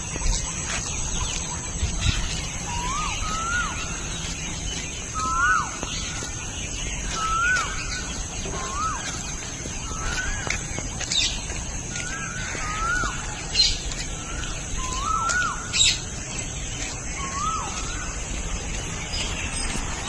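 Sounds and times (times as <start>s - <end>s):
bird call rising and falling: 0.8s - 11.4s.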